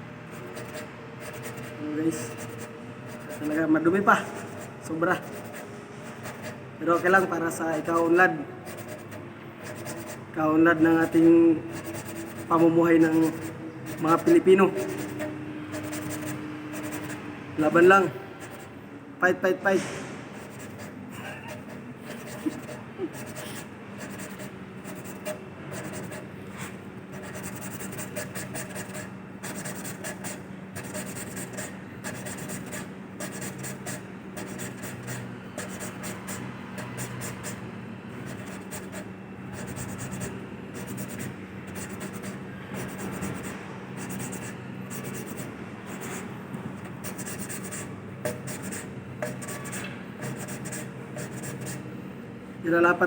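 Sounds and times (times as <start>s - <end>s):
steady low hum: 0.0s - 53.0s
valve lapping scraping: 20.4s - 37.6s.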